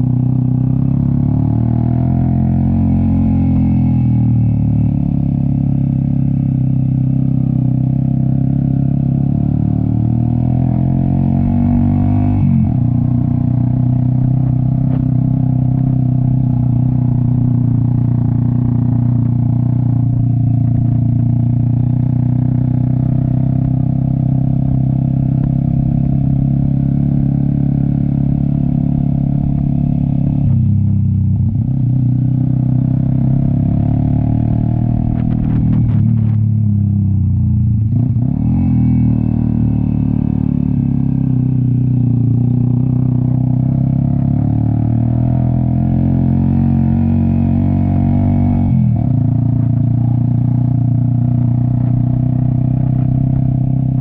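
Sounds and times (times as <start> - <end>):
motorcycle engine under load: 11.3 - 54.0.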